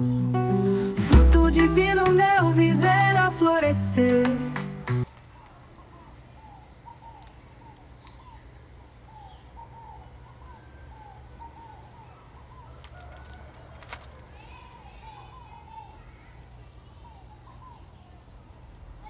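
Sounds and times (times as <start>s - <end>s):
birds chirping: 4.6s - 19.0s.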